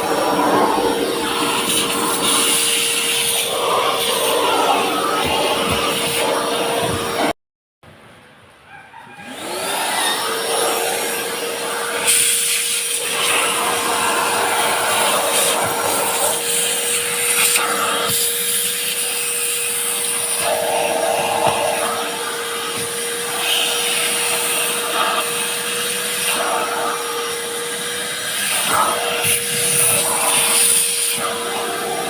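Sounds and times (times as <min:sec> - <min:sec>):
vacuum cleaner running: 0:00.0 - 0:07.4, 0:09.2 - 0:32.0.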